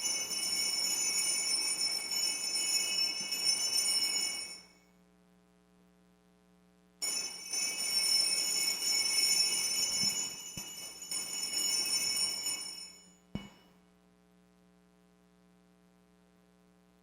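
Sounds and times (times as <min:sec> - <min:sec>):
small bells ringing: 0:00.0 - 0:04.8, 0:07.0 - 0:13.6.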